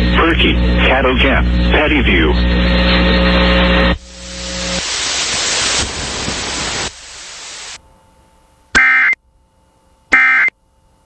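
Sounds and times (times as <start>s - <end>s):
radio hiss: 0.2s - 7.8s
harsh buzzing data squawks: 8.8s - 9.2s, 10.1s - 10.5s.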